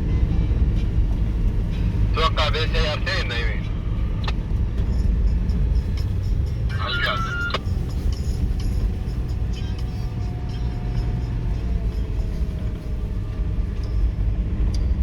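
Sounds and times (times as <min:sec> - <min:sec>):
car driving rumble: 0:00.0 - 0:15.0.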